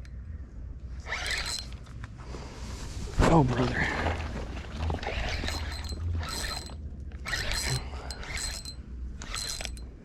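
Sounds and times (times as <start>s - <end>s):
fishing reel whirring: 1.0s - 1.8s, 5.0s - 9.8s.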